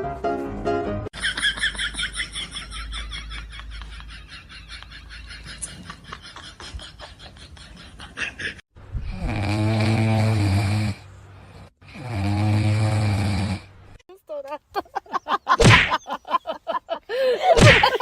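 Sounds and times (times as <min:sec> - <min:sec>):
background music: 0:00.0 - 0:01.1
person snoring: 0:09.0 - 0:13.7.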